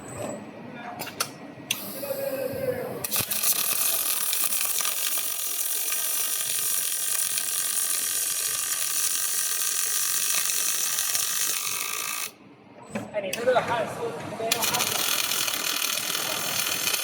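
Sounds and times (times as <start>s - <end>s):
welding arc crackle: 3.1s - 12.4s, 14.5s - 17.0s.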